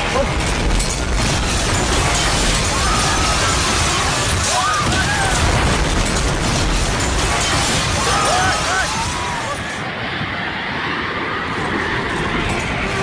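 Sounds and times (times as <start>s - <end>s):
rumbling and crashing: 0.0s - 9.9s, 11.4s - 13.0s
people shouting: 2.5s - 5.9s, 7.4s - 9.9s.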